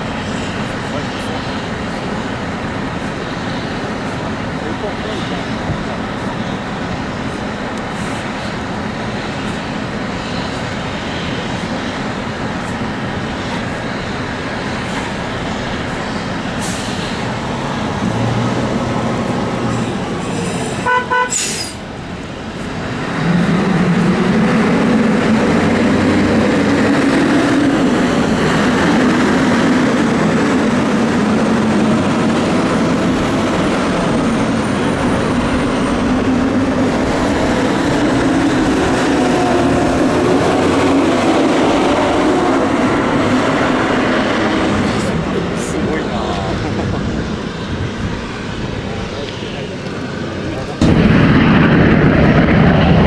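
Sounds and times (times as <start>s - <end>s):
fire truck engines running: 0.0s - 53.0s
heavy engine revving: 0.0s - 53.0s
pulsing horn toot: 19.2s - 21.8s.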